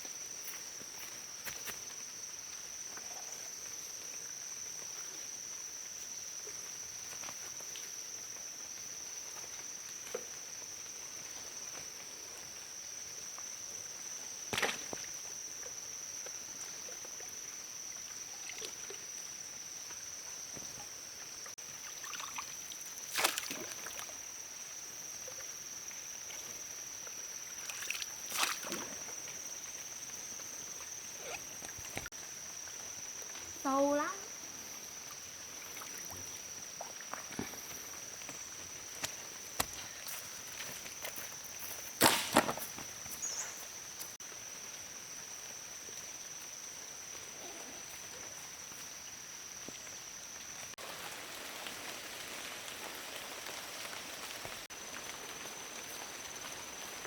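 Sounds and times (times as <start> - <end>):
water sloshing and splashing: 21.7 - 24.2, 27.5 - 32.1.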